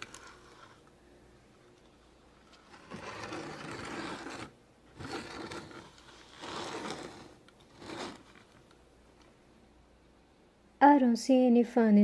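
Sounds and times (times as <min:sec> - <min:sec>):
toy scraping and whirring: 0:02.4 - 0:08.6.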